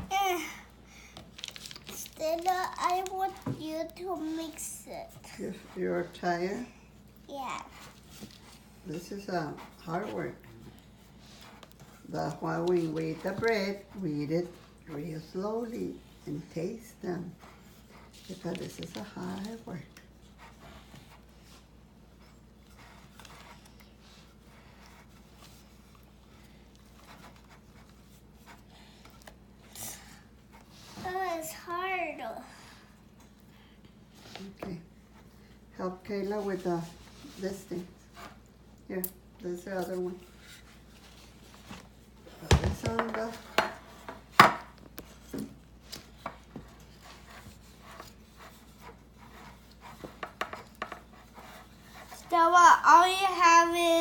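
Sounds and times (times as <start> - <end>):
spoon scraping batter in a bowl: 46.4 - 52.3.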